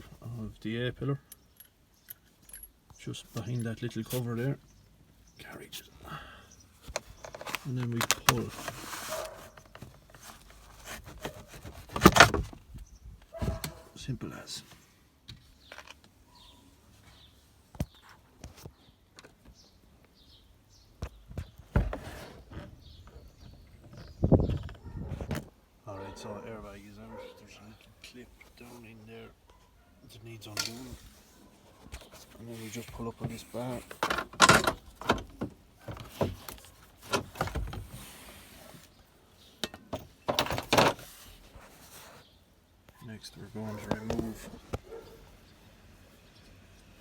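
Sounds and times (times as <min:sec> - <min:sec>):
plastic rubbing scrape: 0:07.1 - 0:12.5, 0:21.8 - 0:22.8
faint bird chirps: 0:14.8 - 0:21.6
clicks and knocks of trim parts: 0:33.2 - 0:37.9.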